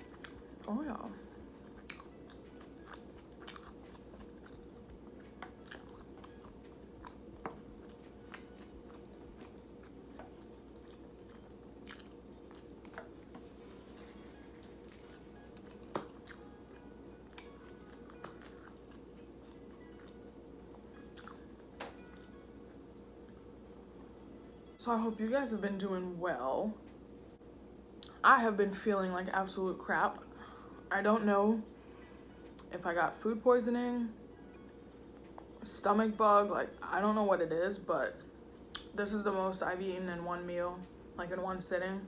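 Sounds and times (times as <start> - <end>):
person chewing food: 0.0 - 0.8, 1.4 - 22.4
faint steady hum: 0.0 - 42.0.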